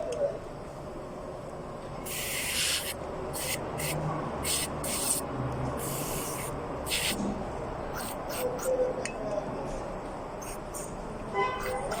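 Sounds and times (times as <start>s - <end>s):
aerosol spray hissing: 2.1s - 5.2s, 5.8s - 7.2s.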